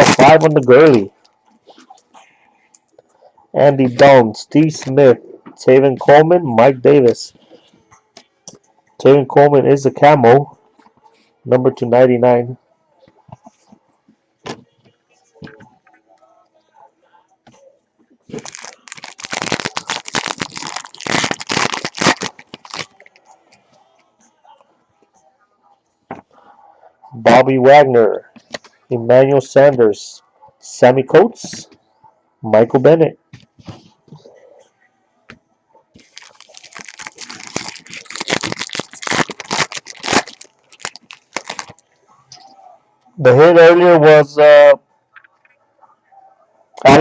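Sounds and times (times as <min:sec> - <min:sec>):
foil wrapper tearing and crinkling: 0:00.0 - 0:00.6, 0:18.3 - 0:23.1, 0:36.0 - 0:41.8.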